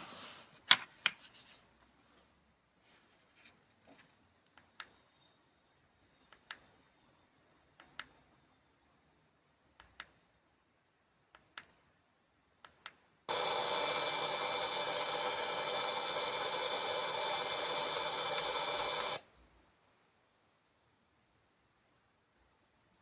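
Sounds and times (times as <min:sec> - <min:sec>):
sharp clicks: 0:12.6 - 0:19.2
speaker buzzing hiss: 0:13.3 - 0:19.2.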